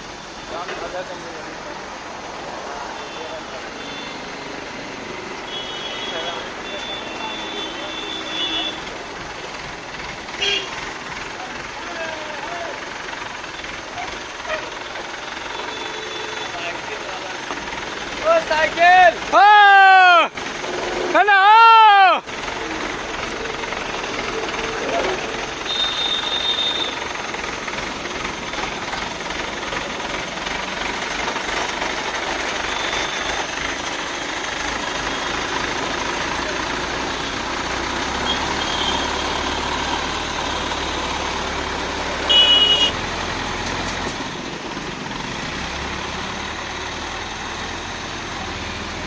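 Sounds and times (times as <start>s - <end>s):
diesel engine running: 0.0s - 49.0s.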